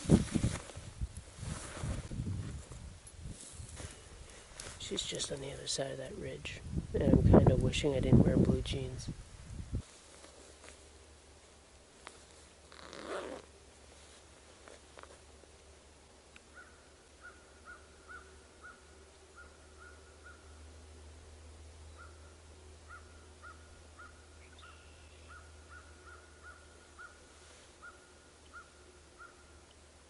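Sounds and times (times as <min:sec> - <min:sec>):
steady low hum: 0:13.4 - 0:30.0.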